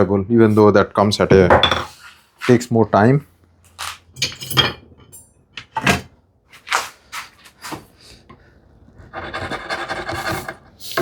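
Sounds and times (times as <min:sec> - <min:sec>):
hand tool scraping wood: 0:09.1 - 0:11.0.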